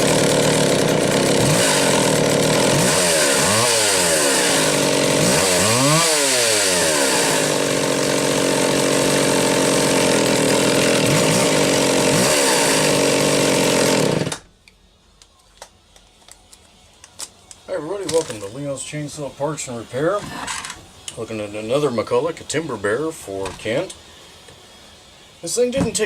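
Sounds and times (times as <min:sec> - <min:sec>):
chainsaw revving: 0:00.0 - 0:14.4.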